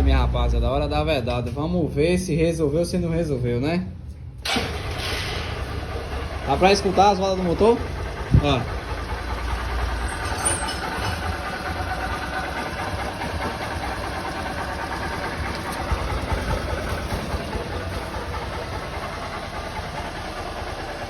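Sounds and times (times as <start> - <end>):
motorcycle engine idling: 4.6 - 21.0.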